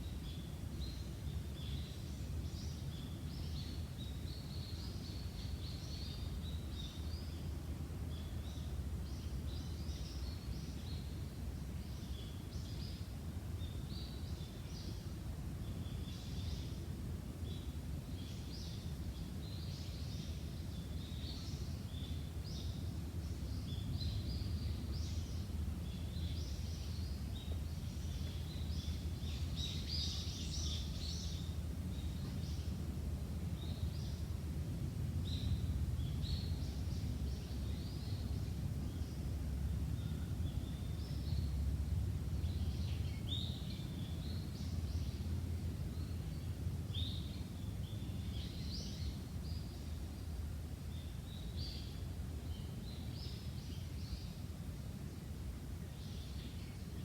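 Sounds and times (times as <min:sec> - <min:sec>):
small birds chirping: 0:17.4 - 0:34.4, 0:42.4 - 0:50.2.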